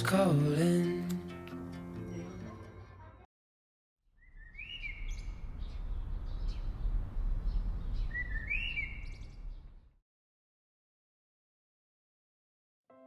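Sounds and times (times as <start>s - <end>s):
songbird whistling calls: 4.2s - 5.8s, 8.0s - 9.4s.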